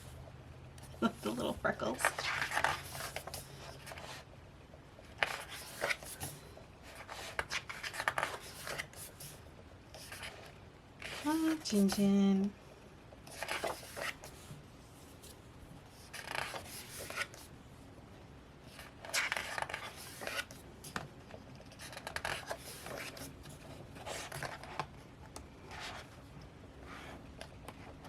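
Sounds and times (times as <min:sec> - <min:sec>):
paper pages rustling: 0:02.0 - 0:04.2, 0:05.1 - 0:09.3, 0:09.9 - 0:12.1, 0:13.3 - 0:17.5, 0:18.7 - 0:24.9.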